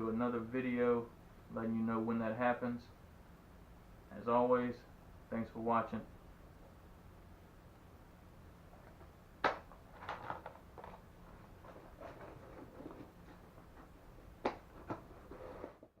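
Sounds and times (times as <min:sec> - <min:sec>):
objects knocking when set down: 0:08.8 - 0:11.0.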